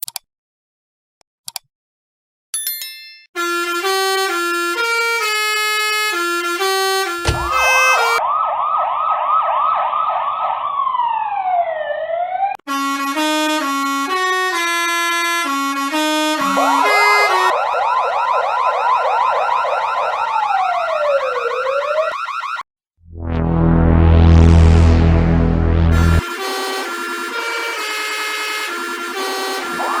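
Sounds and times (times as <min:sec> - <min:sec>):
electronic siren yelp: 0:07.5 - 0:12.6, 0:16.4 - 0:22.6, 0:26.0 - 0:30.0
stepping tune of horn-like tones: 0:15.5 - 0:22.1, 0:24.8 - 0:30.0.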